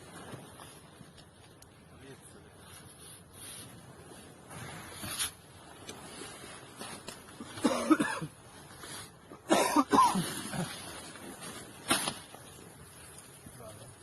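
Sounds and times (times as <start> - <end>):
faint sharp crack: 11.8 - 12.4.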